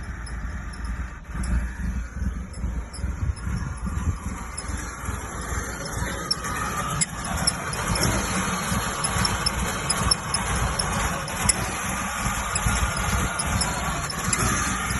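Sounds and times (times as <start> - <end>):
car engine uneven idle: 0.0 - 14.9
faint regular ticks: 5.8 - 14.9.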